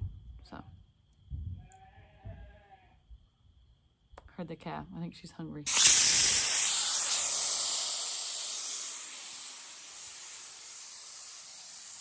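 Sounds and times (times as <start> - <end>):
steady hissing: 5.7 - 12.0.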